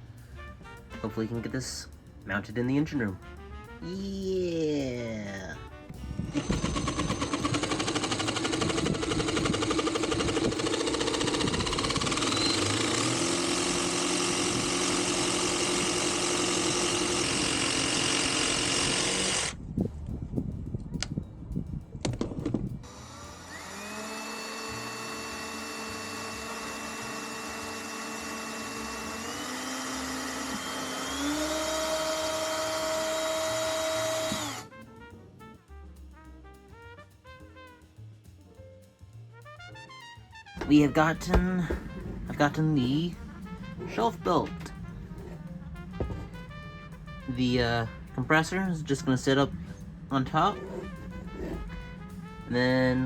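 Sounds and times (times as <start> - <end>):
motor running: 5.9 - 19.6, 22.1 - 34.8, 40.6 - 53.0
power tool running: 6.0 - 19.6, 22.8 - 34.7, 40.6 - 53.0.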